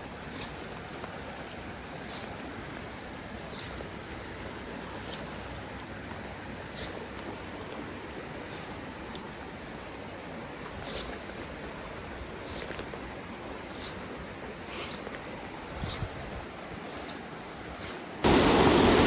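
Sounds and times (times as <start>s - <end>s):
faint high ticks: 8.4s - 9.3s.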